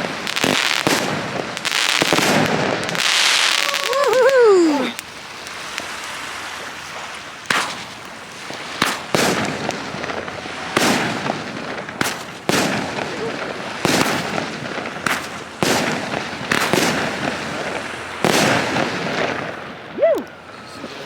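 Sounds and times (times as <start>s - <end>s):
sharp firework bangs: 0.0s - 6.0s, 6.6s - 20.1s
fireworks crackling: 0.0s - 21.0s.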